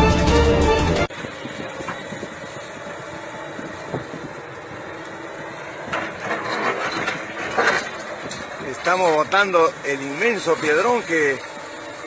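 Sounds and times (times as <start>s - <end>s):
music: 0.0s - 1.1s
diesel engine idling: 0.0s - 12.0s.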